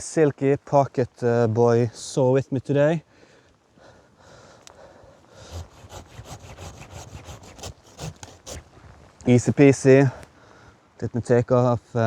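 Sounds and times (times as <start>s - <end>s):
hand saw cutting branch: 5.3s - 8.7s.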